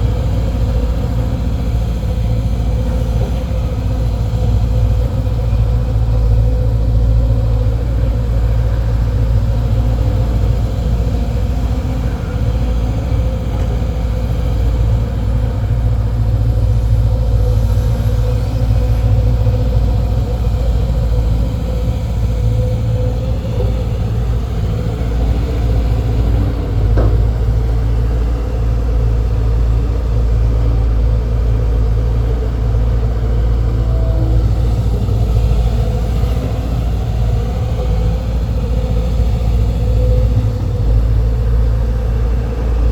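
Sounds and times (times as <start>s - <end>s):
diesel engine rumbling: 0.0s - 42.9s
faint knock: 26.9s - 27.4s.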